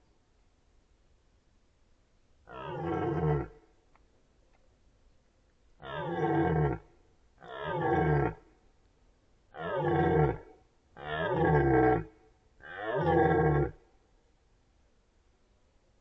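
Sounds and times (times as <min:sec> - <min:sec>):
deer stag roaring: 0:02.5 - 0:03.6, 0:05.8 - 0:06.8, 0:07.4 - 0:08.4, 0:09.6 - 0:10.4, 0:11.0 - 0:13.8.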